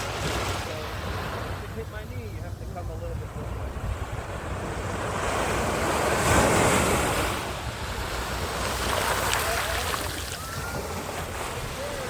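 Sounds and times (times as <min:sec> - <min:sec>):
wind rumbling on microphone: 0:00.0 - 0:12.0
ocean wave breaking: 0:03.2 - 0:12.0.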